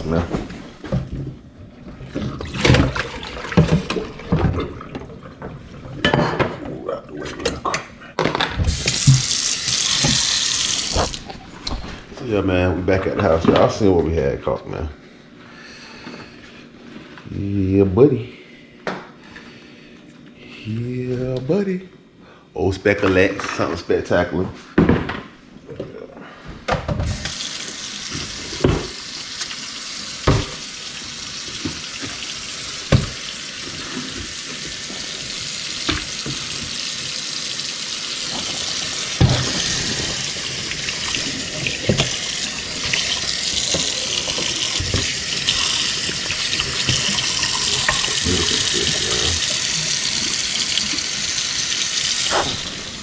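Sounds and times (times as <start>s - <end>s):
tap water running into sink: 2.0s - 5.6s, 8.6s - 12.1s, 27.1s - 53.0s.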